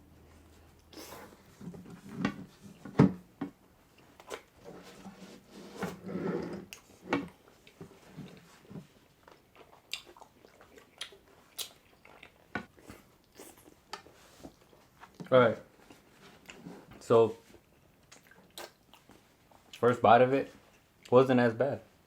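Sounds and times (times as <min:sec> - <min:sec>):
mouth smacks and clicks: 0:04.2 - 0:04.5, 0:09.6 - 0:14.1, 0:18.0 - 0:19.8
biting and chewing food: 0:06.7 - 0:15.3.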